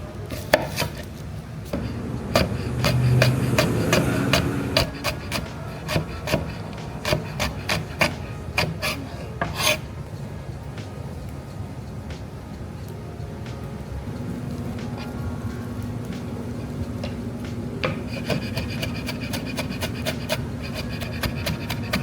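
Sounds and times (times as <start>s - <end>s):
low hum: 1.6s - 7.0s, 10.0s - 22.0s
knife chopping on wooden board: 1.8s - 9.8s, 17.8s - 22.0s.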